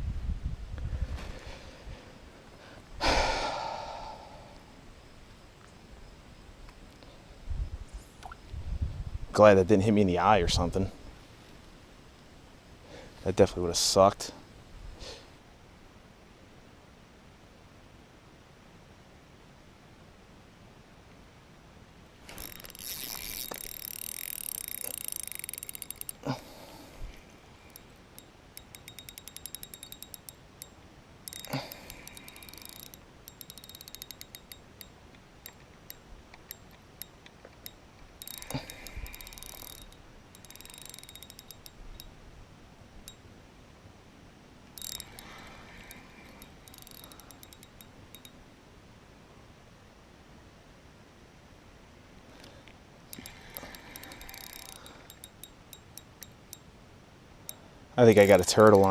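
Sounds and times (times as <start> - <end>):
fishing line hissing off spool: 22.2 - 30.7, 31.3 - 42.1, 44.8 - 48.3, 53.2 - 56.6
reel engaging click: 22.3 - 26.3, 27.7 - 42.1, 44.8 - 48.3, 53.1 - 56.6
reel ticking as cranked: 22.3 - 26.4, 27.7 - 42.1, 44.8 - 48.3, 53.1 - 56.6.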